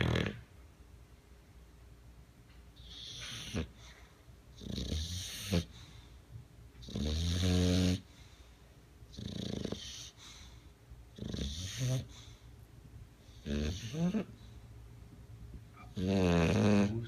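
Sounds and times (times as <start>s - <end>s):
dog snoring: 0.0s - 0.5s, 2.8s - 5.8s, 6.8s - 8.2s, 9.1s - 12.4s, 13.3s - 14.4s, 15.8s - 17.0s.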